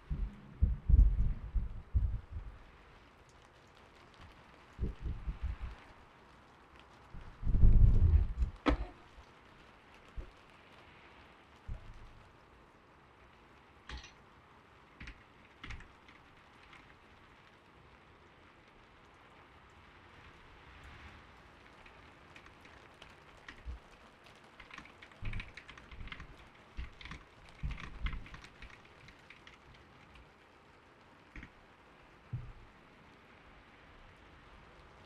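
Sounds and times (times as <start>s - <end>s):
gentle rain patter: 0.0s - 35.0s
mechanical keyboard typing: 24.6s - 29.6s.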